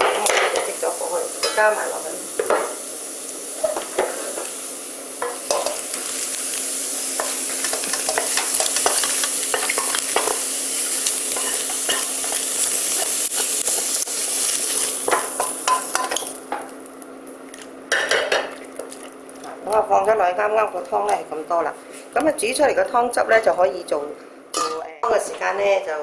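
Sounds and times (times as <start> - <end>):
bean sprouts sizzling: 0.0 - 17.6
metal spatula scraping and clinking: 7.2 - 12.4.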